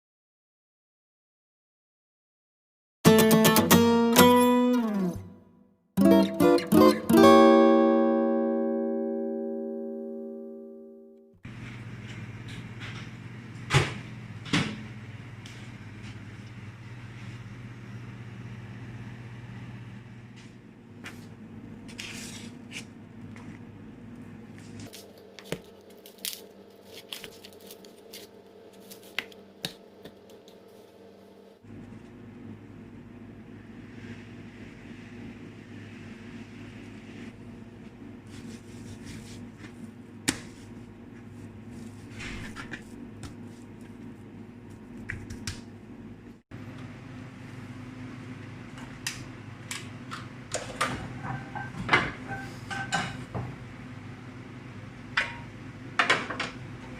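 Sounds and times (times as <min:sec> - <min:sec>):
dishes clicking and knocking: 0:50.6 - 0:53.3.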